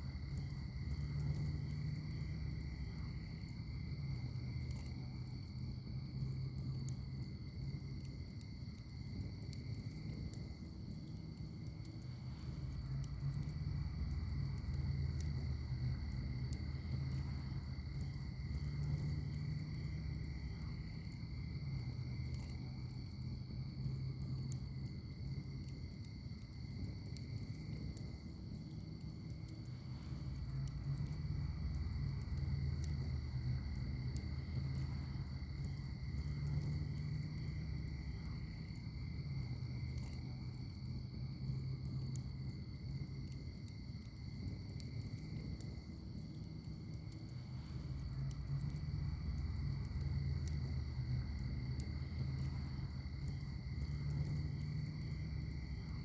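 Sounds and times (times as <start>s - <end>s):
wood fire crackling: 0.0s - 56.0s
high insect trill: 28.9s - 56.0s.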